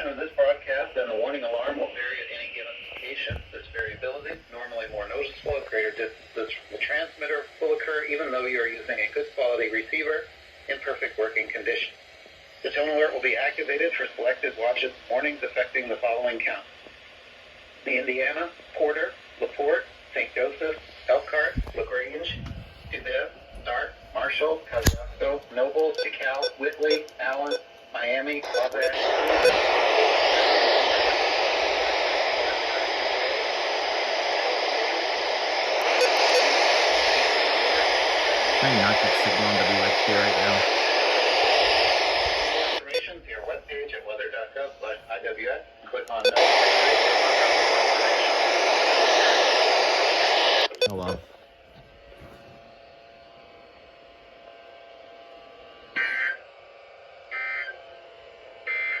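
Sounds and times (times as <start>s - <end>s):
low electrical hum: 0.0s - 46.8s
radio static hiss: 0.0s - 51.4s
electronic buzzer beeps: 26.0s - 27.7s, 28.5s - 29.6s, 35.9s - 36.6s, 50.7s - 51.2s.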